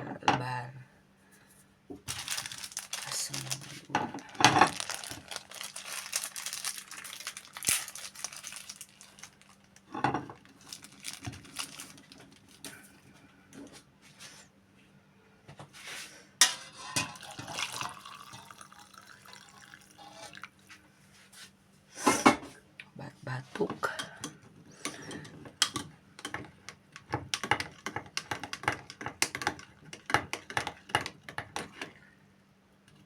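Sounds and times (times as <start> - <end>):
liquid dripping and splashing: 17.2 - 20.6.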